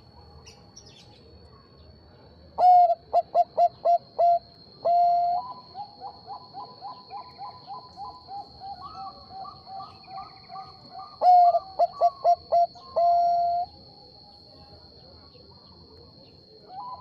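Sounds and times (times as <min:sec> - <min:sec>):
dove cooing: 0:02.6 - 0:13.7, 0:16.7 - 0:17.0.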